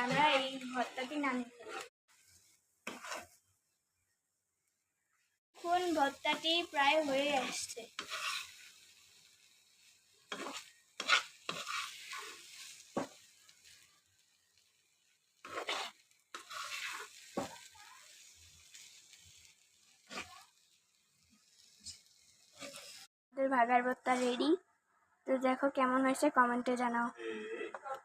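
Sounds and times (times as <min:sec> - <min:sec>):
spatula scraping frying pan: 0:00.0 - 0:03.4, 0:05.6 - 0:13.8, 0:15.3 - 0:23.1
light sizzle: 0:00.0 - 0:23.1.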